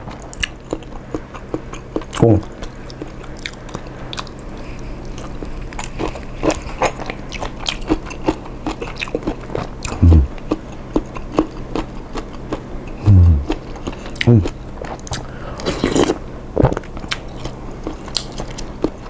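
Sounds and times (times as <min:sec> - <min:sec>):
chewing with wet smacking clicks: 0:00.1 - 0:15.3, 0:16.6 - 0:19.0
person humming low: 0:09.9 - 0:10.4, 0:13.0 - 0:13.6, 0:14.2 - 0:14.5.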